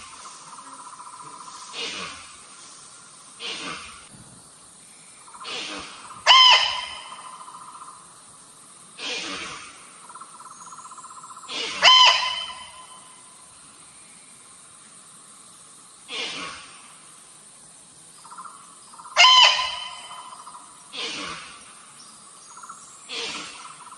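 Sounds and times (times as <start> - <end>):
insect drone: 0.0 - 23.9
high-pitched deer calls: 5.4 - 7.5, 11.5 - 13.0, 19.0 - 21.4.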